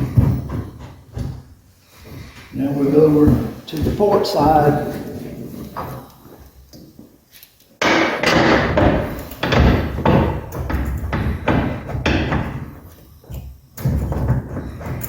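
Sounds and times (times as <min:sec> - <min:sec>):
metal frame knocking and clanking: 0:07.8 - 0:15.0.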